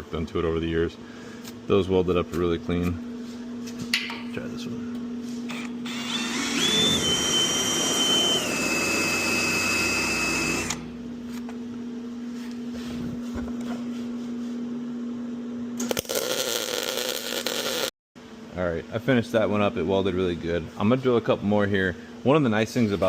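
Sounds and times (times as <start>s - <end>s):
steady low hum: 0.0s - 16.1s
welder arc crackling and buzzing: 5.6s - 11.4s, 15.8s - 17.9s.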